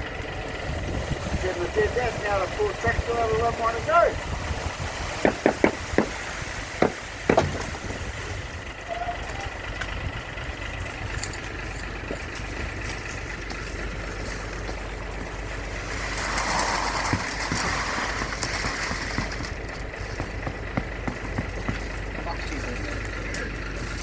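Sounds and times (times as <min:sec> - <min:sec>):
diesel engine running: 0:00.0 - 0:24.0
sharp knocks: 0:05.1 - 0:06.2, 0:06.8 - 0:08.0.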